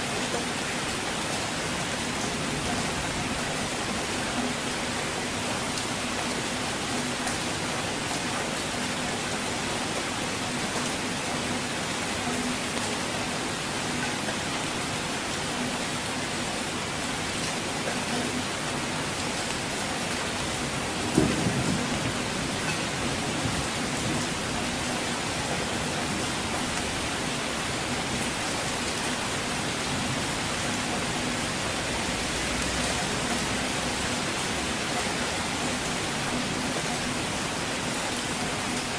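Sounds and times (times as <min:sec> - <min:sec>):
rainfall hiss: 0:00.0 - 0:38.9
thunder clap rumbling: 0:21.0 - 0:24.4.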